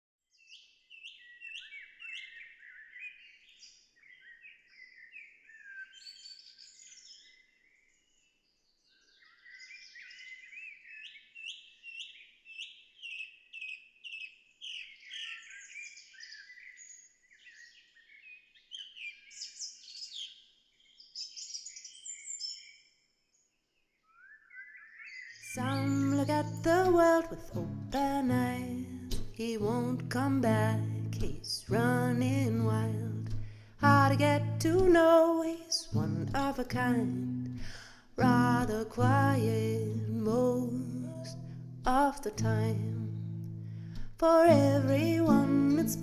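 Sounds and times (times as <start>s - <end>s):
songbird chirping and trilling: 0.3s - 29.2s.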